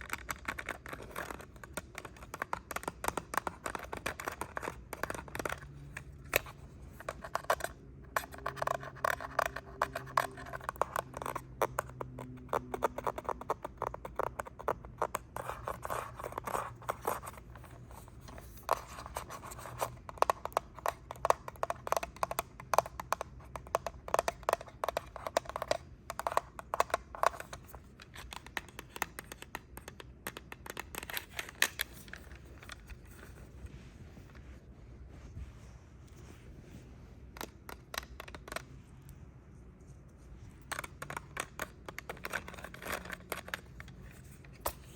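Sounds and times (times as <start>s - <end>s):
fingers tapping on a device: 19.8s - 27.6s.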